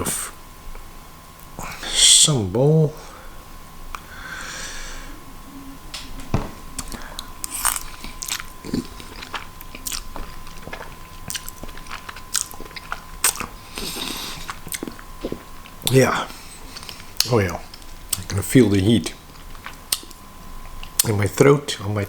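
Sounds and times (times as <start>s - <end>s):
mouth clicks and smacks: 6.0s - 16.0s
wet chewing: 6.0s - 18.4s, 19.1s - 21.2s.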